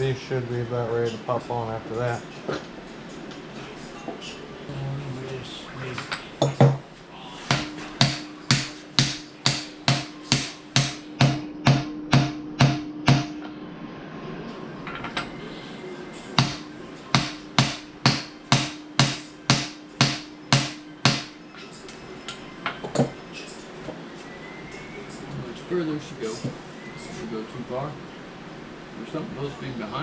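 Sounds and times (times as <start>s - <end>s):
hammer tapping metal part: 7.5s - 13.5s, 16.4s - 21.4s.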